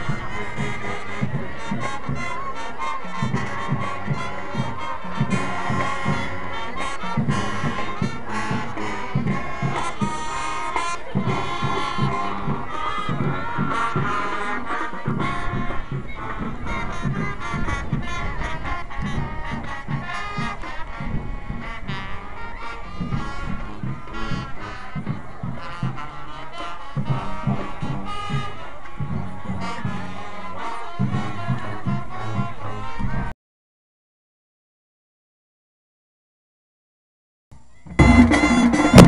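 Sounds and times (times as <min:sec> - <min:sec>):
marching band playing: 0:00.0 - 0:33.3, 0:37.8 - 0:39.0
heavy drum beat: 0:37.8 - 0:39.0.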